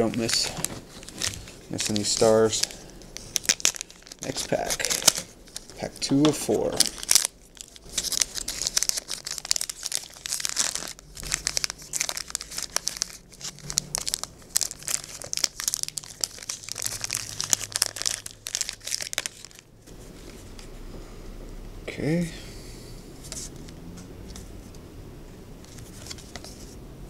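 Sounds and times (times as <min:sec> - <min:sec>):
wrapper tearing and crinkling: 0:00.0 - 0:19.7.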